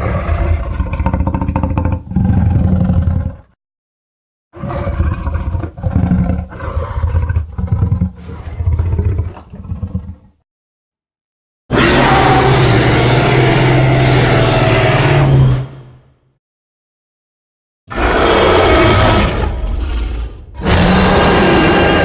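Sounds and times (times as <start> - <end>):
dinosaur roar: 0.0 - 3.5, 4.6 - 10.1, 11.7 - 15.8, 17.9 - 22.0.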